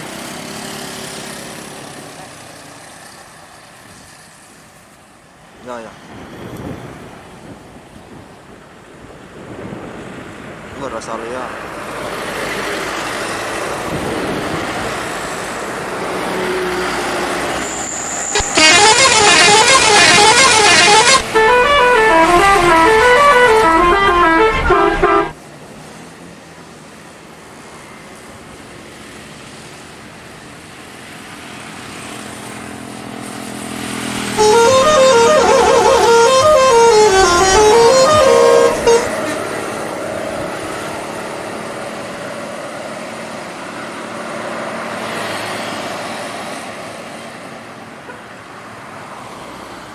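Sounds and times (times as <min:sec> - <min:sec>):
road and engine noise: 0:00.0 - 0:49.9
musical bus horn melody: 0:18.2 - 0:25.4, 0:34.4 - 0:39.7.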